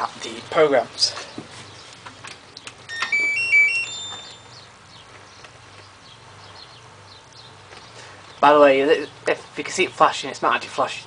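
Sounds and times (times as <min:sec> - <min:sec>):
electronic beeping jingle: 0:02.9 - 0:04.5.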